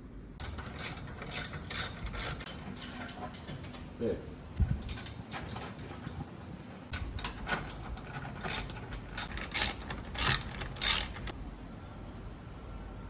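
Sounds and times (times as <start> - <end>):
hand tool strokes: 8.0 - 11.3.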